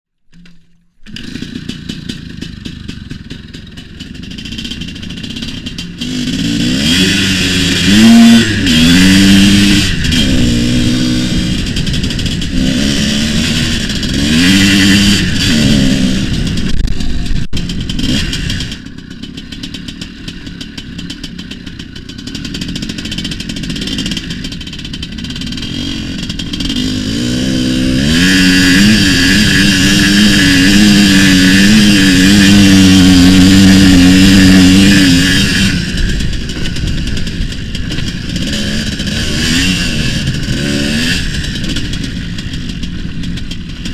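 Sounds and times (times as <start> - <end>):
motorcycle two-stroke engine revving: 0.3 - 43.9.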